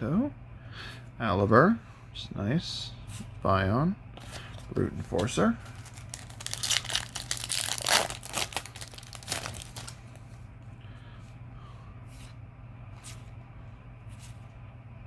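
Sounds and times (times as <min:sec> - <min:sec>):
cards being handled: 0:04.2 - 0:10.3
foil pack tearing and crinkling: 0:05.1 - 0:10.2.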